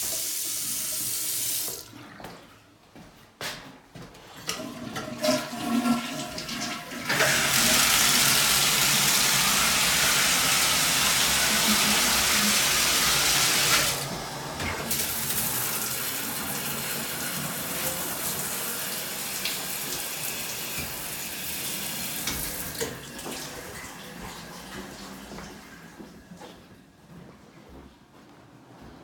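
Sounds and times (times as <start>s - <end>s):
tap water running into sink: 0.0s - 2.3s, 4.4s - 25.0s.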